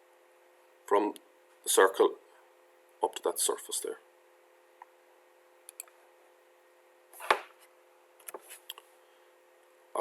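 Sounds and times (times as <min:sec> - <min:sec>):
low electrical hum: 0:00.0 - 0:10.0
computer mouse clicking: 0:05.7 - 0:06.0.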